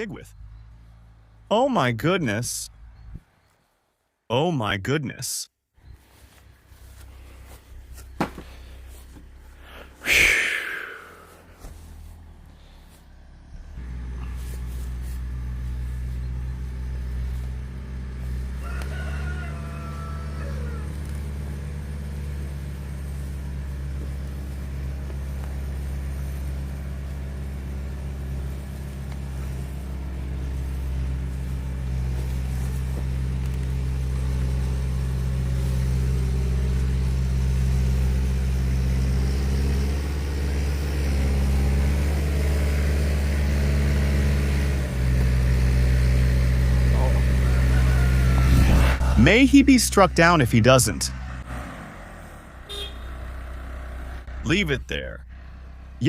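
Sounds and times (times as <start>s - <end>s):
engine starting and running: 5.9s - 56.0s
rooster crowing: 18.4s - 21.4s, 47.0s - 49.2s.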